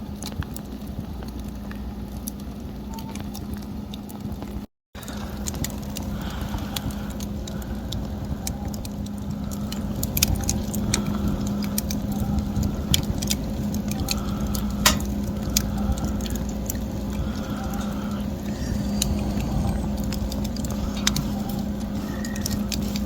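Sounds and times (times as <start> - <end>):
wood fire crackling: 0.0 - 23.0
low rumble: 5.2 - 23.0.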